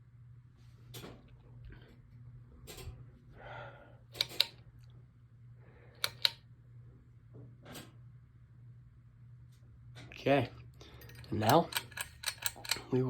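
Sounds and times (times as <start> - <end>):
ceiling fan motor hum: 0.0 - 13.0
sharp clicks: 6.0 - 6.4.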